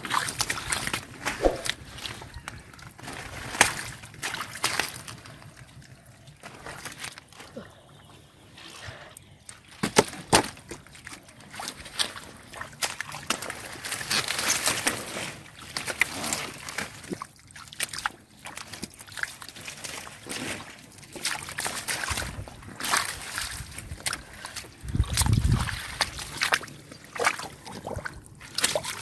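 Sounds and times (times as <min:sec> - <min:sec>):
sharp water splashes: 0:00.0 - 0:02.0, 0:21.2 - 0:29.0
shallow water sloshing: 0:00.0 - 0:08.4, 0:11.0 - 0:29.0.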